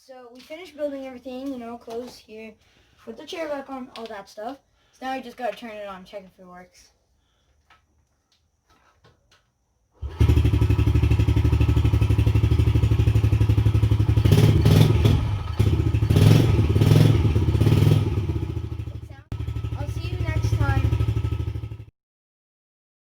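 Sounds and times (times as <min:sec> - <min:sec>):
engine throttle blips: 0:10.0 - 0:21.9
motorcycle engine starting and running: 0:10.0 - 0:21.9.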